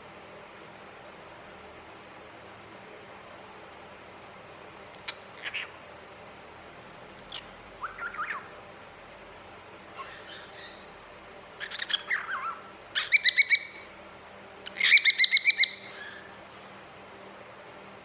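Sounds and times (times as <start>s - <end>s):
cockatiel whistling and chirping: 7.8s - 8.5s, 10.0s - 10.8s, 11.6s - 13.9s, 14.7s - 16.4s.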